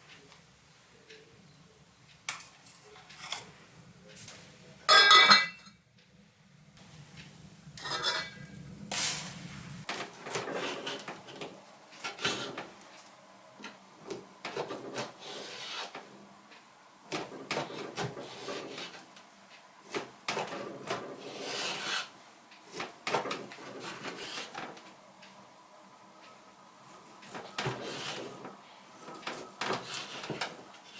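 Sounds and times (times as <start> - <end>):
scraping on wood: 9.9 - 12.8, 14.1 - 16.1, 17.1 - 19.1, 19.9 - 22.1, 22.7 - 24.8, 27.2 - 30.9.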